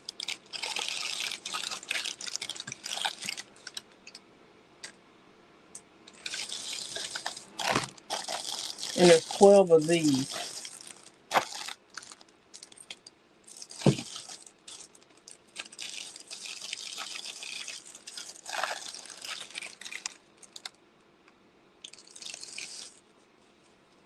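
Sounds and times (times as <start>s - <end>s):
packaging rustling and crinkling: 0.1s - 3.9s, 6.1s - 20.8s.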